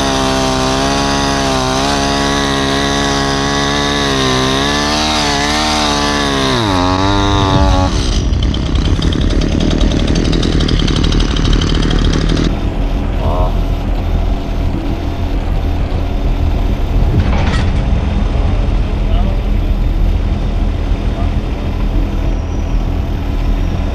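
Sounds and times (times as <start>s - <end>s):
chainsaw running: 0.0s - 23.9s.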